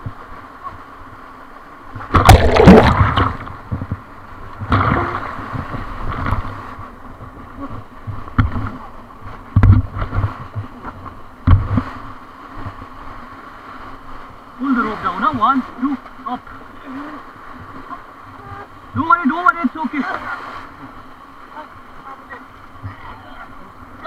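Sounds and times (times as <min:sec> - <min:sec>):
water splashing against boat: 0:00.0 - 0:24.0
whitewater rushing: 0:00.4 - 0:09.2, 0:14.6 - 0:24.0.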